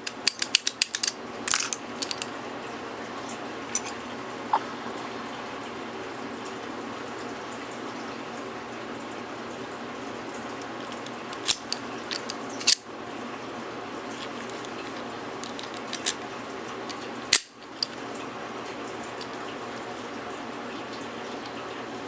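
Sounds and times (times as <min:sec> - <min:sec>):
metallic lock picking clicks: 0:00.1 - 0:02.3.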